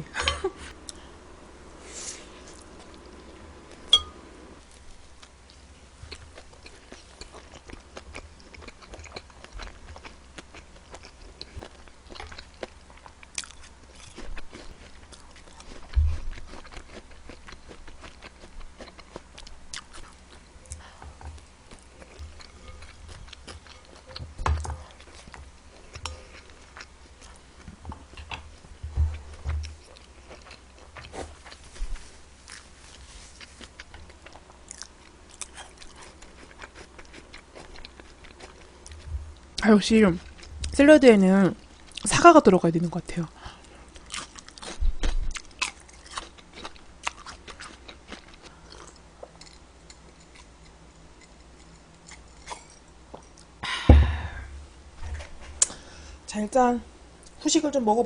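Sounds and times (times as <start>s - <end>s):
crunchy chewing: 4.7s - 28.7s, 29.3s - 39.6s, 43.5s - 53.6s
low thumps: 53.8s - 55.5s.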